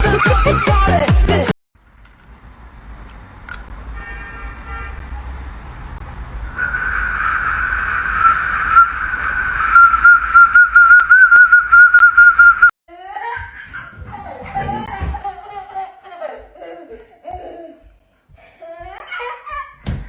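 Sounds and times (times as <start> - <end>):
high steady whistle: 6.5 - 12.7
high-pitched laughter: 13.6 - 17.6.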